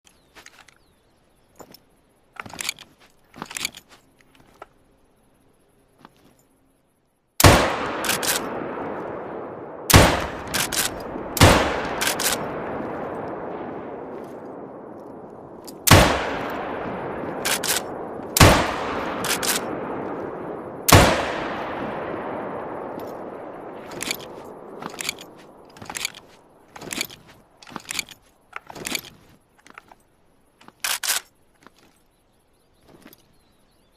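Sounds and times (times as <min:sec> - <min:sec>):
metallic clicks: 0:01.5 - 0:04.7, 0:10.4 - 0:11.1, 0:11.8 - 0:12.5, 0:17.4 - 0:17.9, 0:23.8 - 0:32.0
rifle shots echoing: 0:07.4 - 0:26.2
rifle lever clicks: 0:10.4 - 0:11.1, 0:12.0 - 0:12.5, 0:17.4 - 0:17.9, 0:23.9 - 0:30.0, 0:30.6 - 0:31.8.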